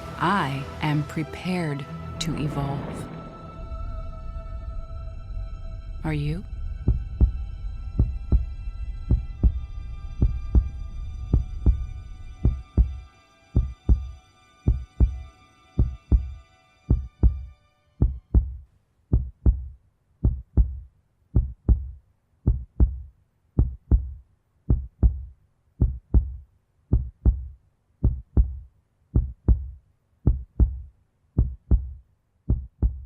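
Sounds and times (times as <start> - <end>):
heartbeat thumps: 6.0 - 33.0.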